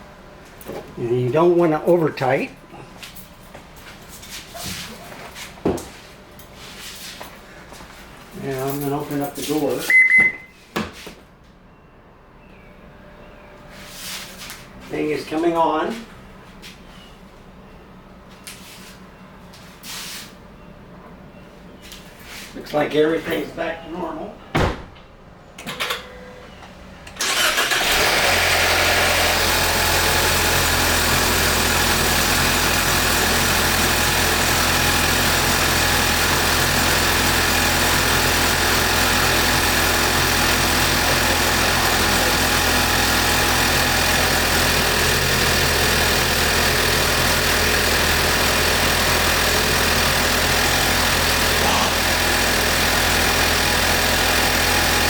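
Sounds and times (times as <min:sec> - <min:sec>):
car engine starting and idling: 0:25.0 - 0:55.0.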